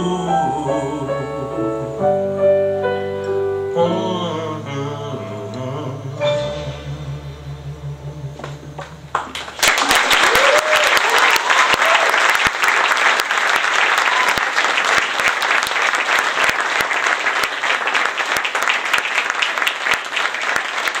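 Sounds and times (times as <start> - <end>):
audience applauding: 8.8 - 21.0
cheers and whoops: 9.8 - 12.5, 13.8 - 14.7.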